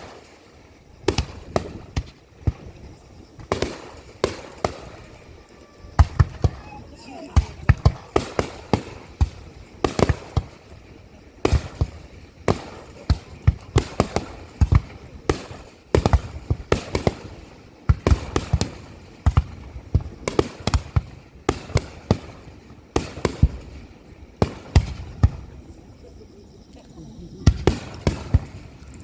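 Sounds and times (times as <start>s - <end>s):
fireworks shells bursting: 0.0s - 17.4s.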